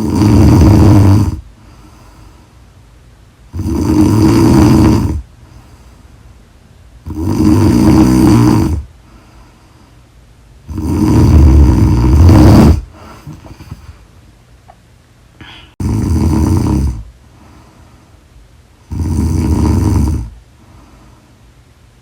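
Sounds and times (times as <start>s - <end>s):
woman snoring loudly: 0.0s - 1.4s, 3.5s - 5.3s, 7.0s - 8.9s, 10.7s - 13.6s, 15.4s - 17.1s, 18.9s - 20.4s
quiet breaths: 0.0s - 2.9s, 4.6s - 6.4s, 8.8s - 10.2s, 11.6s - 14.2s, 15.3s - 15.8s, 16.6s - 18.4s, 19.4s - 21.6s.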